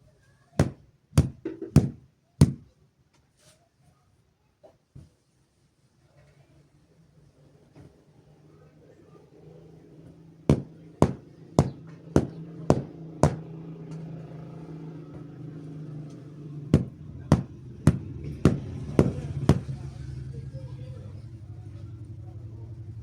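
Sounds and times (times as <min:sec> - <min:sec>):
blanket being beaten: 0:00.6 - 0:02.7, 0:10.5 - 0:13.6, 0:16.7 - 0:19.9
steady low hum: 0:09.7 - 0:23.0.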